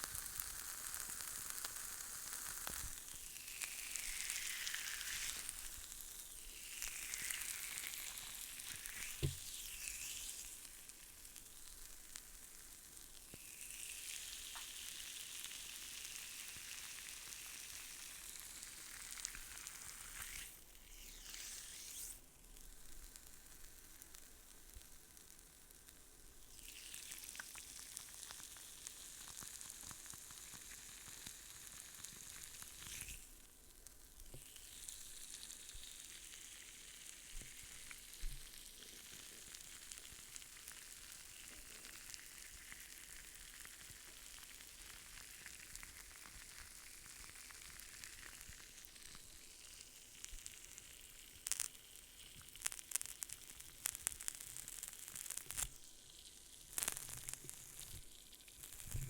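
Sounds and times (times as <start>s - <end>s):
soft crackling massage rub: 56.8s - 59.0s.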